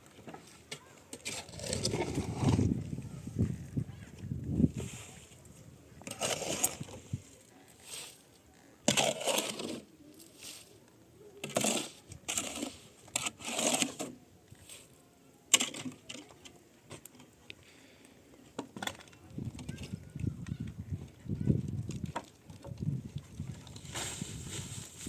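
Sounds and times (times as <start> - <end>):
objects scraping and clattering: 0.2 - 10.8, 11.4 - 17.4, 23.5 - 25.0.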